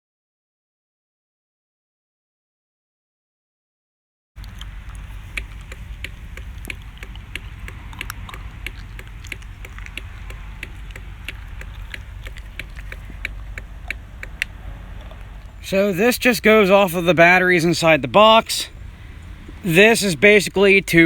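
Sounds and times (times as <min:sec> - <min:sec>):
low steady hum: 0:04.4 - 0:21.0
relay clicking rapidly: 0:04.4 - 0:21.0.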